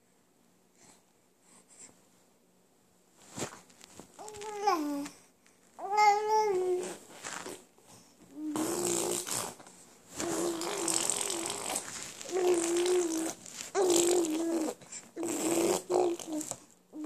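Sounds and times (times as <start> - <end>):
baby babbling: 4.2 - 5.2, 5.8 - 7.0, 10.2 - 17.0.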